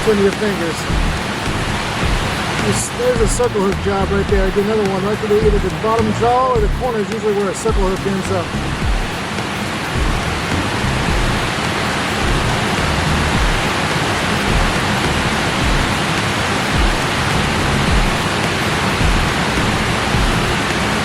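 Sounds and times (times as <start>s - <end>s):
water rushing over dam spillway: 0.0s - 8.5s, 9.1s - 21.0s
low rumbles: 0.8s - 4.6s, 5.4s - 6.9s, 7.7s - 9.2s, 10.0s - 11.6s, 12.2s - 13.7s, 14.5s - 16.0s, 16.8s - 18.3s, 19.0s - 20.6s.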